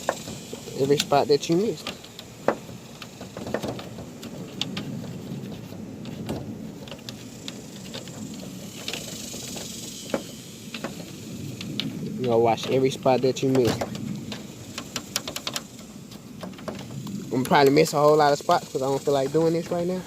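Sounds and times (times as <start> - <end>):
low background rumble: 0.0 - 20.0.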